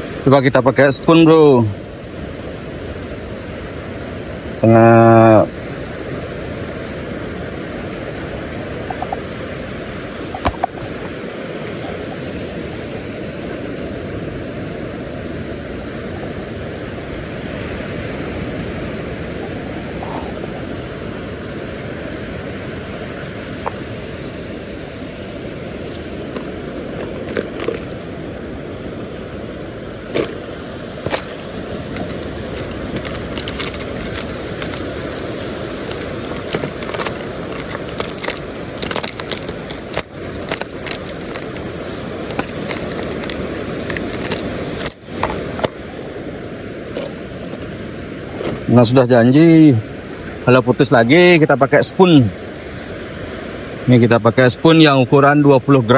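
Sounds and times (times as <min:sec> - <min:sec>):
wind: 0:00.0 - 0:55.9
fishing tackle clicking and jingling: 0:25.9 - 0:28.0, 0:31.0 - 0:45.8.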